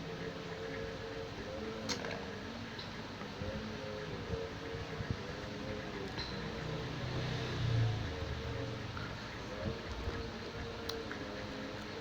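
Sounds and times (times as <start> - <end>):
low background hum: 0.0 - 12.0.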